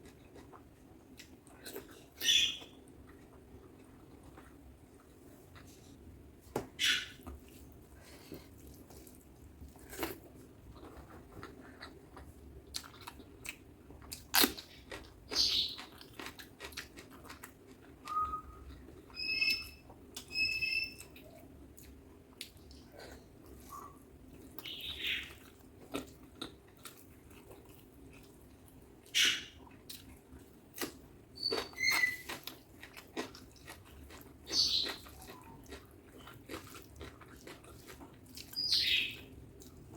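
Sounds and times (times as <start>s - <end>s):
wet chewing and mouth clicks: 8.3s - 39.9s.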